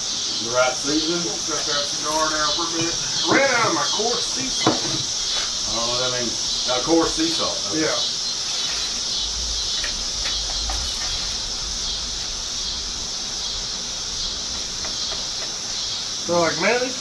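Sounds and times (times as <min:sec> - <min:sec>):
high-pitched hiss: 0:00.0 - 0:17.0
low rumble: 0:09.0 - 0:14.5.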